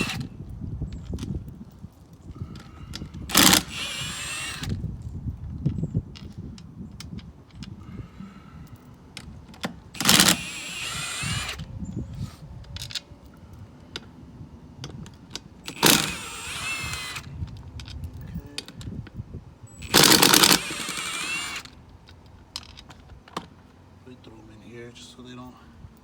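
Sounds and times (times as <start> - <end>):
impact wrench rattling and whirring: 0.0 - 0.3, 2.6 - 6.4, 9.5 - 11.8, 15.0 - 18.1, 19.8 - 23.5
metallic clicks of bolts: 8.6 - 11.6, 15.3 - 18.9, 19.8 - 23.0.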